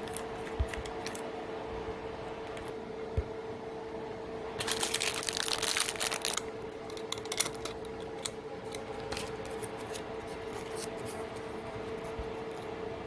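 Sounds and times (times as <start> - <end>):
faint steady hum: 0.0 - 13.0
packaging crinkling and rustling: 4.6 - 11.4.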